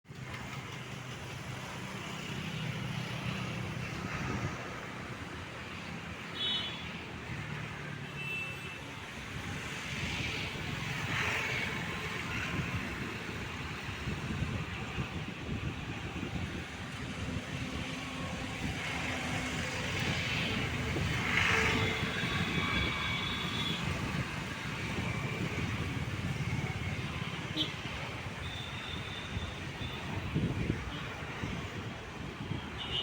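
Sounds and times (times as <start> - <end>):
outdoor noise: 0.0 - 33.0.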